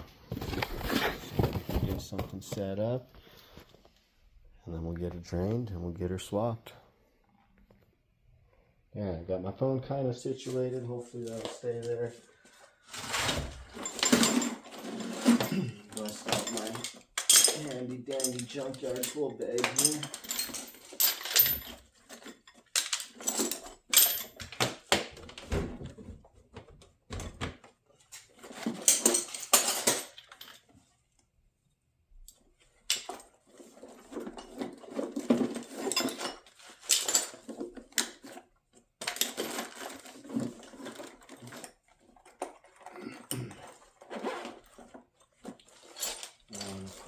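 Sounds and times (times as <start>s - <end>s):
metal hand tools clinking: 13.8s - 24.4s, 35.1s - 38.2s.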